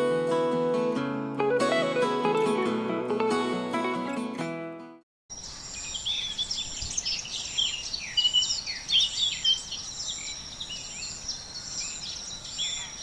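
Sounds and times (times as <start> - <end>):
acoustic guitar music: 0.0 - 5.0
birds chirping and twittering: 5.3 - 13.0.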